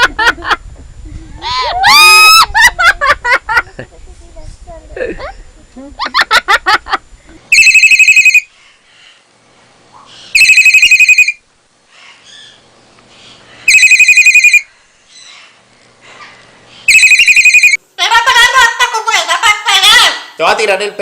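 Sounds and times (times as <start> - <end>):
telephone trilling ring: 7.5 - 8.4, 10.4 - 11.4, 13.7 - 14.7, 16.9 - 17.8.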